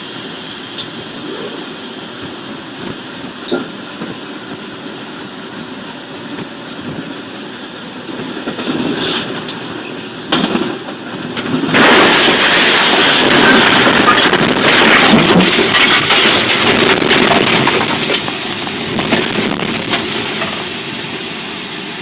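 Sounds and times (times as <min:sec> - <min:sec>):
train rumbling on rails: 0:00.0 - 0:22.0
sudden loud clatter: 0:11.4 - 0:20.2.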